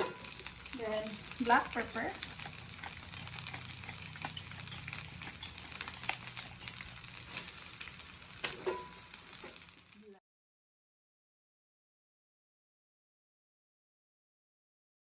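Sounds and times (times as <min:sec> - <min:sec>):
utensil clicking against pan: 0:00.0 - 0:09.7
fried rice sizzling in a pan: 0:00.0 - 0:10.2.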